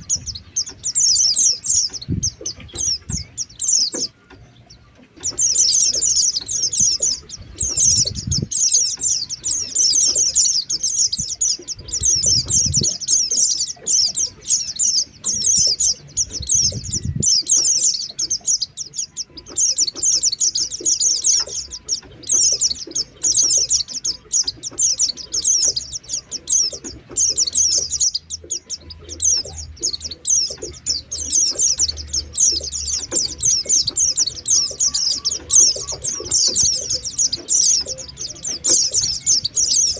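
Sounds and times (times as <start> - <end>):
low rumbles: 0.0 - 19.0
birds twittering: 0.0 - 39.9.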